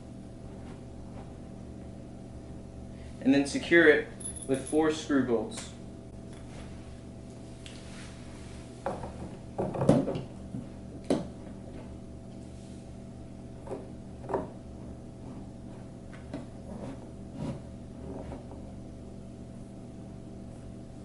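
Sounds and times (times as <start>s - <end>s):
low steady hum: 0.0s - 21.0s
knocks and clicks of furniture panels: 8.9s - 11.4s.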